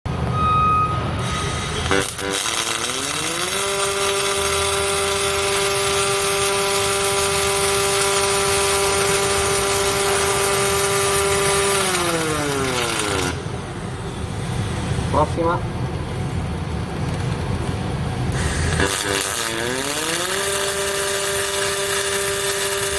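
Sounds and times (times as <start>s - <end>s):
robotic welding motor whine: 1.2s - 14.8s, 18.3s - 22.9s.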